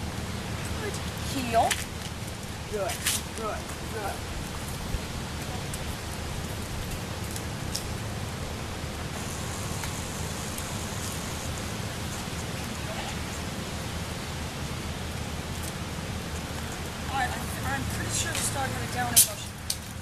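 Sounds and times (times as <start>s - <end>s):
outdoor background hiss: 0.0s - 20.0s.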